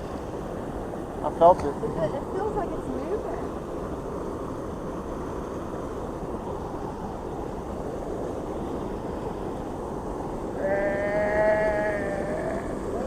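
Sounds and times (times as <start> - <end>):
waterfall rushing: 6.4 - 13.0.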